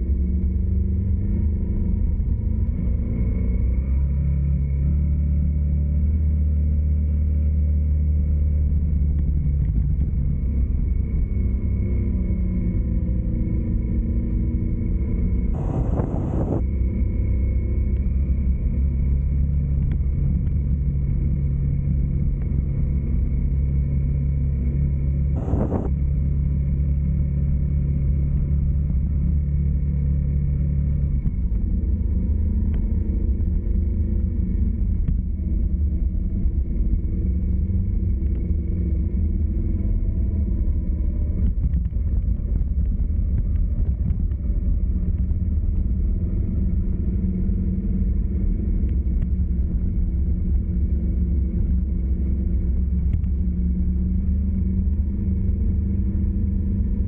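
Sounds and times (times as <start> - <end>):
vehicle engine and road rumble: 0.0 - 57.0.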